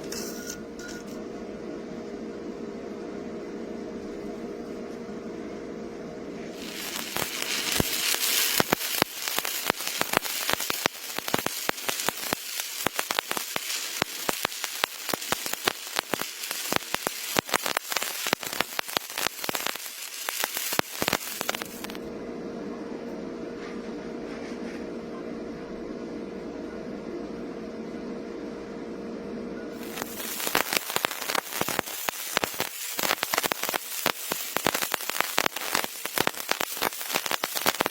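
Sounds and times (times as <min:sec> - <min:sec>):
steady hum: 0:00.0 - 0:37.9
arc welding crackling: 0:06.5 - 0:22.0, 0:29.8 - 0:37.9.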